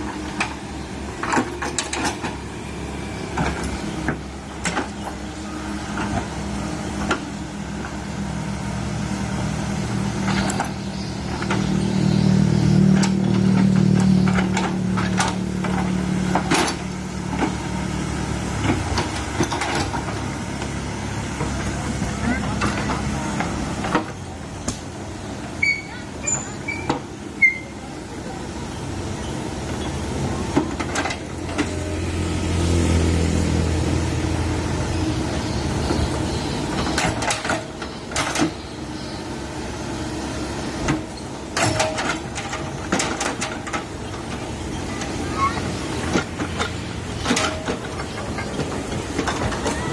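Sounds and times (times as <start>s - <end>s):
excavator diesel engine running: 0.0s - 49.9s
sharp metal clanks and knocks: 41.6s - 43.9s.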